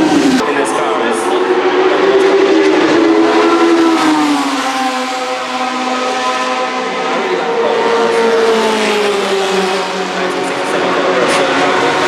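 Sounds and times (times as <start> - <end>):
racing car engine on track: 0.0 - 12.0.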